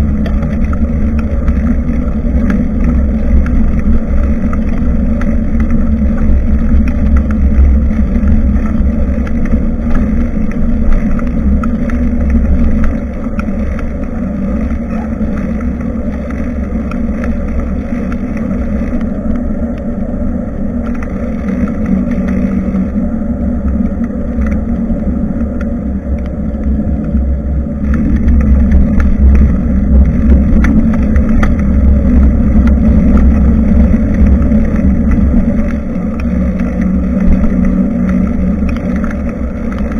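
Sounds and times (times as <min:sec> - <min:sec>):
small rattles: 0:00.0 - 0:19.8, 0:27.8 - 0:39.9
road noise: 0:00.0 - 0:39.9
wind buffeting microphone: 0:00.0 - 0:39.9.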